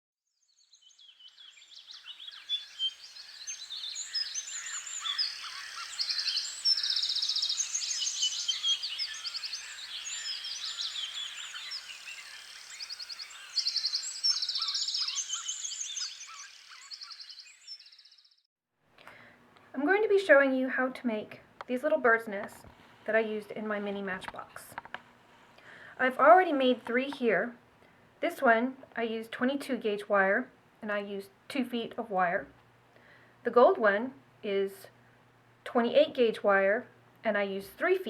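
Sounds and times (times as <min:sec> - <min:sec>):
songbirds chorus singing: 0:00.8 - 0:18.4.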